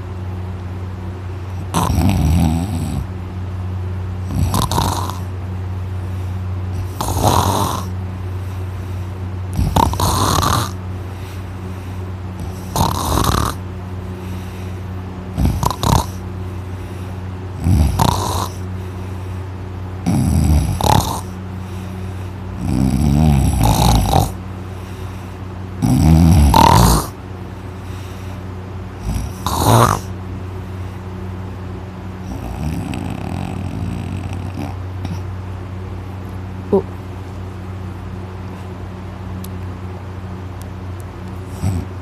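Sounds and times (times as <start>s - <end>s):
steady low hum: 0.0s - 42.0s
man snoring loudly: 1.5s - 3.1s, 4.2s - 5.3s, 6.8s - 8.0s, 9.5s - 10.8s, 12.4s - 13.6s, 15.3s - 16.2s, 17.5s - 18.6s, 20.0s - 21.4s, 22.6s - 24.4s, 25.8s - 27.2s, 29.0s - 30.2s, 32.2s - 35.2s, 41.5s - 42.0s.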